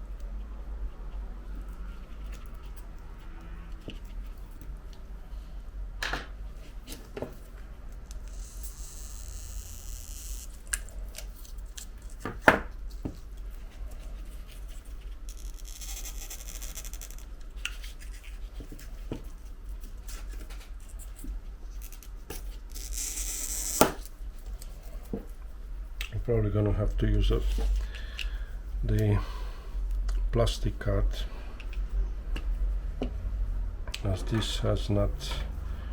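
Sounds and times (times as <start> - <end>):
steady low hum: 0.0 - 35.9.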